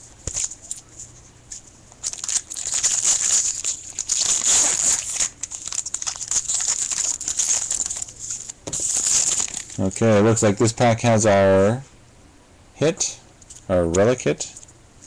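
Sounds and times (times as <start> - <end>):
foil wrapper tearing and crinkling: 2.0 - 10.1.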